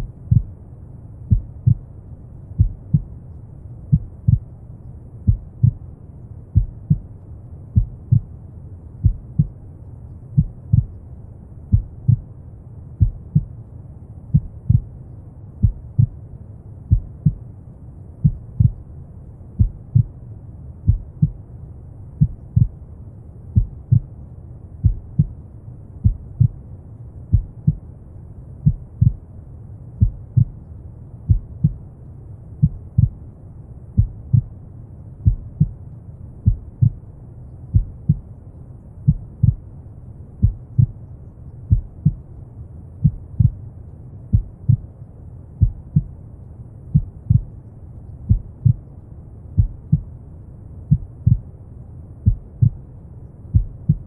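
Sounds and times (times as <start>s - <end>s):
slow heartbeat thumps: 0.0s - 0.5s, 1.3s - 1.9s, 2.6s - 3.2s, 3.9s - 4.5s, 5.2s - 5.8s, 6.6s - 7.1s, 7.8s - 8.3s, 9.0s - 9.6s, 10.4s - 11.0s, 11.7s - 12.3s, 13.0s - 13.6s, 14.3s - 15.0s, 15.6s - 16.2s, 16.9s - 17.4s, 18.2s - 18.8s, 19.6s - 20.2s, 20.9s - 21.4s, 22.2s - 22.8s, 23.6s - 24.2s, 24.8s - 25.4s, 26.0s - 26.6s, 27.3s - 27.8s, 28.6s - 29.2s, 30.0s - 30.6s, 31.3s - 31.8s, 32.6s - 33.2s, 34.0s - 34.5s, 35.2s - 35.8s, 36.4s - 37.0s, 37.7s - 38.4s, 39.1s - 39.7s, 40.4s - 41.0s, 41.7s - 42.2s, 43.0s - 43.6s, 44.3s - 44.9s, 45.6s - 46.2s, 46.9s - 47.6s, 48.3s - 48.9s, 49.6s - 50.1s, 50.9s - 51.5s, 52.2s - 52.8s, 53.5s - 54.0s
deep brown noise rumble: 0.0s - 54.0s.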